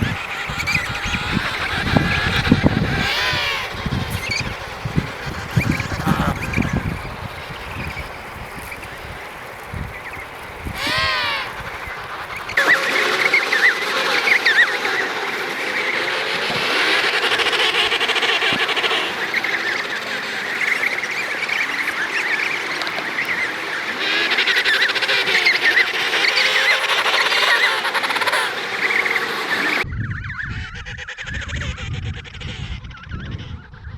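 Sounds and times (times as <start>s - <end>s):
wind rumble on microphone: 0.0s - 12.9s, 29.7s - 33.9s
penguins calling: 0.0s - 29.8s.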